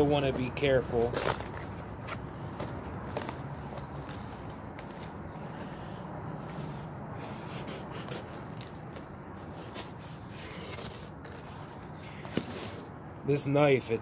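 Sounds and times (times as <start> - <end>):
knife scraping packing tape: 1.0 - 2.2, 7.2 - 12.8.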